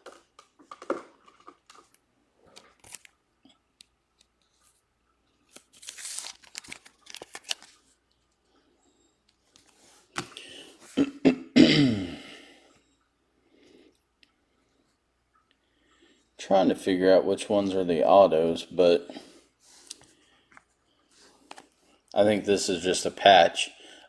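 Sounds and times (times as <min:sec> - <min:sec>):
wrapper crinkling and tearing: 0:00.0 - 0:03.2, 0:05.5 - 0:08.0
person coughing: 0:10.9 - 0:12.4.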